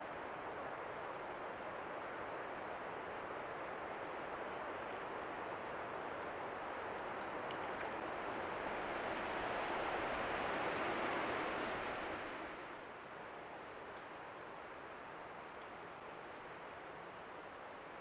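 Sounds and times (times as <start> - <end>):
creek water flowing: 3.1 - 13.9.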